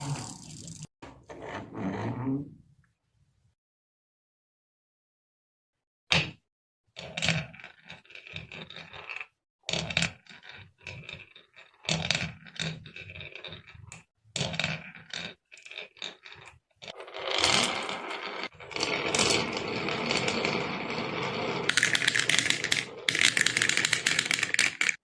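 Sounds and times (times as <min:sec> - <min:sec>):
marbles rattling down wooden run: 0:07.8 - 0:25.0.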